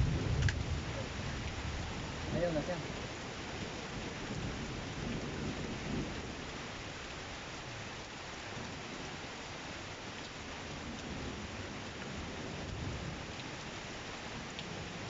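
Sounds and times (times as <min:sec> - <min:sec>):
thunder rumbling: 0:00.0 - 0:02.6
steady rain hiss: 0:00.0 - 0:15.0.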